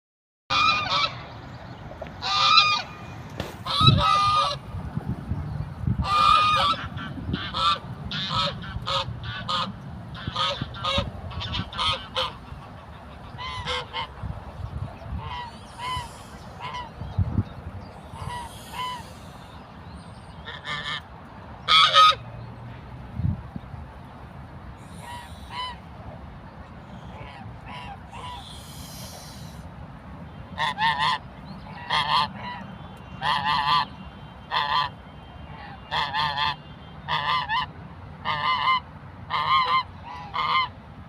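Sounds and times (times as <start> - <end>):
geese honking: 0.5 - 1.3, 2.2 - 4.7, 6.0 - 17.0, 18.0 - 19.6, 20.4 - 21.0, 21.6 - 22.3, 24.8 - 25.9, 27.0 - 29.6, 30.5 - 40.8.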